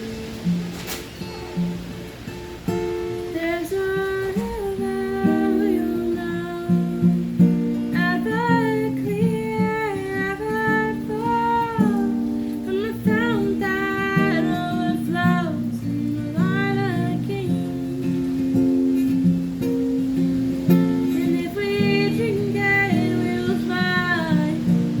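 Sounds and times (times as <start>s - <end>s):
acoustic guitar: 0.0s - 25.0s
person singing: 3.3s - 18.6s, 20.8s - 25.0s.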